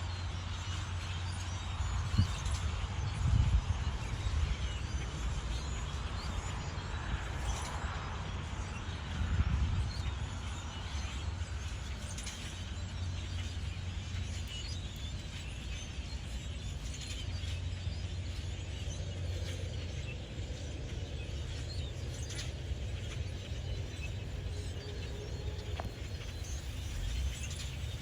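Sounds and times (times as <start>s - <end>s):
steady low rumble: 18.4s - 28.0s
birds chirping and calling: 22.2s - 28.0s.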